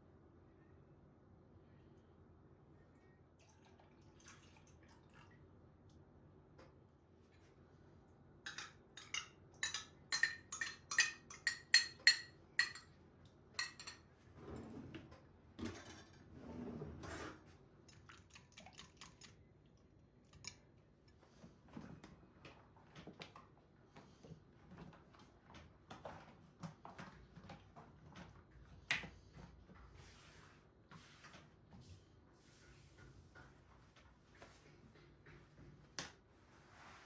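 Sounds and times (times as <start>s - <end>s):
metal utensil striking a dish: 8.5s - 12.8s.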